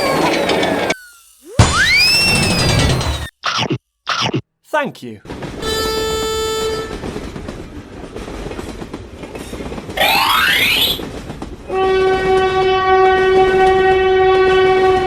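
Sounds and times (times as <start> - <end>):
train clattering rumble: 5.3 - 15.0
train horn: 5.6 - 7.4, 11.7 - 15.0.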